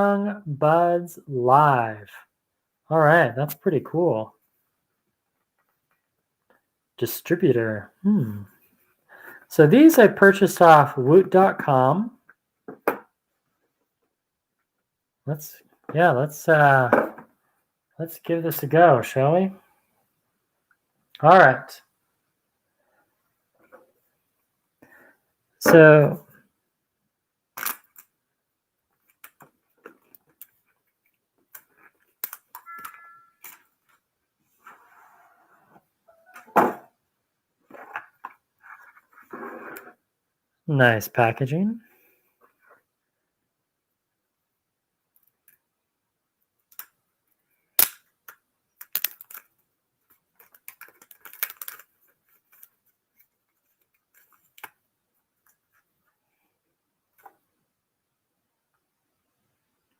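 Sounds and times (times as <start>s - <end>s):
packaging clicks and taps: 31.4s - 33.7s, 47.8s - 49.5s, 50.1s - 52.8s
high squeak-like tone: 32.6s - 33.5s.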